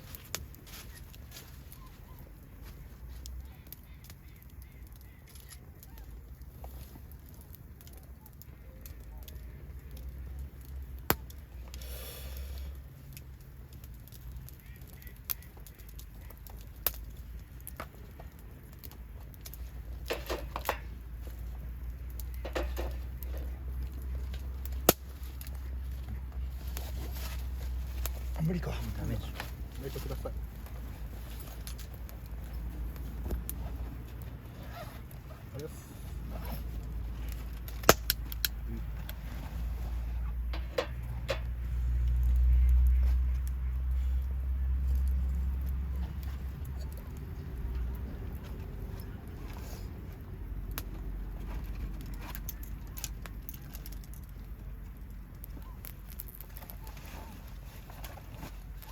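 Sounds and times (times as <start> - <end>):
wood bonfire crackling: 0.0 - 58.9
sharp pops of fire: 3.2 - 25.8, 36.6 - 39.2
steady low rumble: 6.4 - 58.9.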